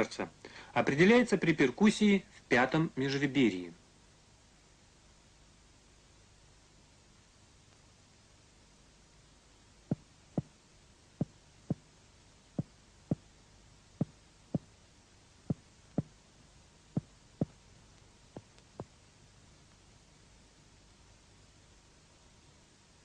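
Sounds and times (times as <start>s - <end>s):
finger tapping on chest: 9.9s - 10.5s.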